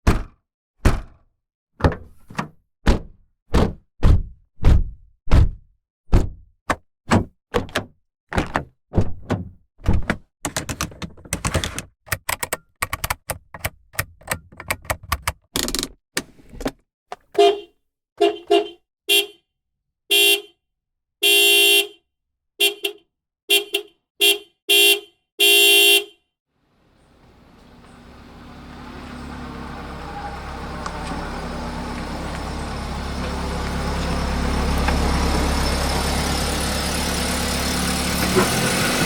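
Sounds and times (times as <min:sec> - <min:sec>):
knocks and clicks: 0:01.8 - 0:16.8
car horn honking: 0:17.4 - 0:19.4, 0:20.1 - 0:20.5, 0:21.2 - 0:22.0, 0:22.6 - 0:26.2, 0:29.3 - 0:33.6.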